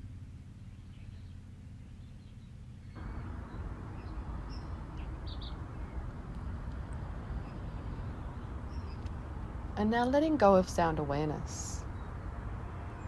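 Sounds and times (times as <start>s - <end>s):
outdoor ambient noise: 0.0s - 13.0s
faint high bird chirps: 2.0s - 9.1s.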